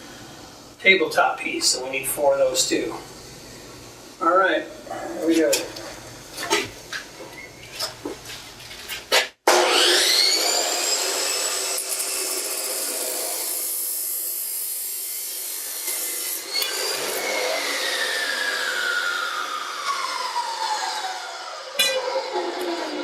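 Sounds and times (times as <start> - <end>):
chop saw cutting steel: 9.1 - 23.0.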